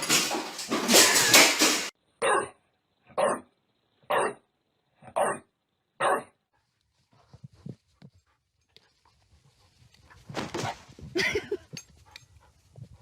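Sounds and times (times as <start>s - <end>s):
dog barking: 2.2s - 3.5s, 4.1s - 4.4s, 5.1s - 6.4s
soft irregular noises: 6.5s - 13.0s
rustling: 6.6s - 13.0s.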